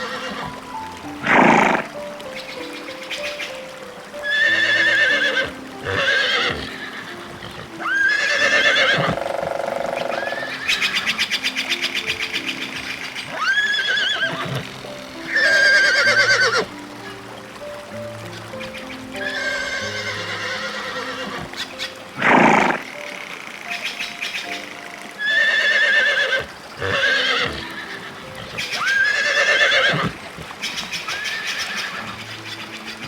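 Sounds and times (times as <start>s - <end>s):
horse whinnying: 0.0s - 0.6s, 1.2s - 1.9s, 4.2s - 11.4s, 13.3s - 14.7s, 15.3s - 16.7s, 19.2s - 22.8s, 24.4s - 32.2s
soft background music: 0.0s - 33.0s.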